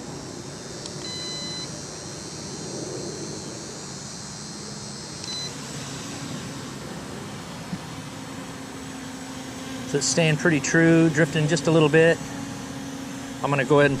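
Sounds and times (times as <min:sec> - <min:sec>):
steady hiss: 0:00.0 - 0:14.0
electronic beeps: 0:00.9 - 0:01.8, 0:05.2 - 0:05.6
click: 0:05.2 - 0:05.4.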